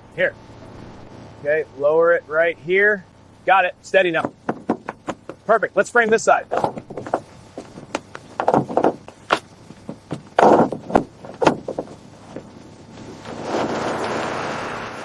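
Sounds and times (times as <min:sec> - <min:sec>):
knocks on wooden lumber: 0:04.2 - 0:05.5, 0:06.5 - 0:11.9
scraping shuffling noises: 0:06.1 - 0:14.8.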